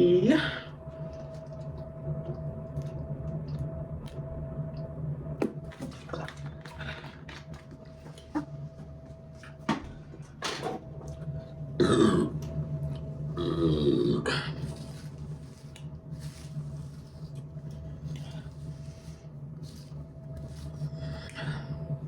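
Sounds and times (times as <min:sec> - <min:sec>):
steady low hum: 0:00.0 - 0:22.0
loud burp: 0:11.8 - 0:12.4.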